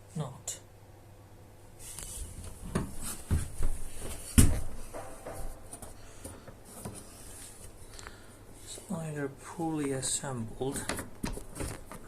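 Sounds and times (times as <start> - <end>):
knocks and rattles of handling parts: 2.7 - 7.8, 10.6 - 12.0.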